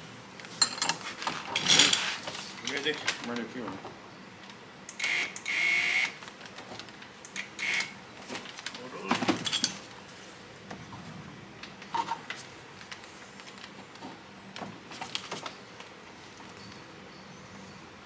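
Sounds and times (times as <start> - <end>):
metal tools clicking and knocking: 0.6 - 1.0.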